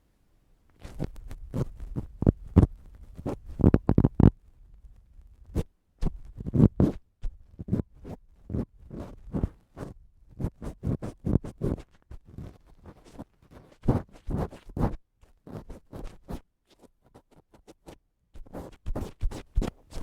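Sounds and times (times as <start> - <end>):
ear pick scraping microphone: 0.8 - 4.4, 5.3 - 16.4.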